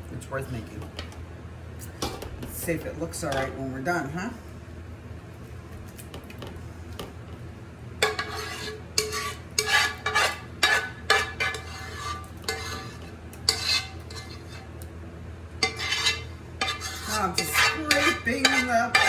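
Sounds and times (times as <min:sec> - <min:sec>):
utensil scraping cooking pan: 0:08.0 - 0:14.8, 0:15.6 - 0:19.0.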